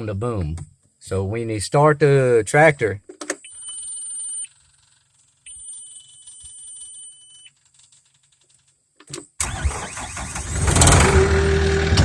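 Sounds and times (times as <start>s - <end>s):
engine cranking and starting: 9.4s - 12.0s.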